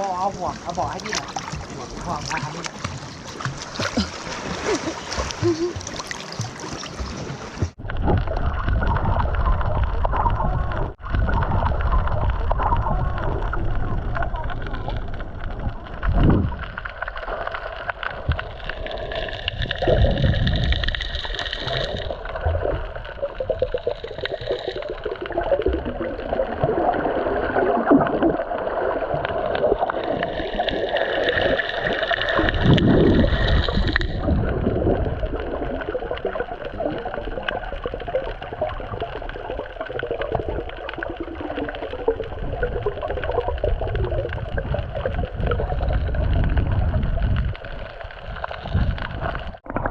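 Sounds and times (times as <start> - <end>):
water gurgling and sloshing: 0.0 - 49.9.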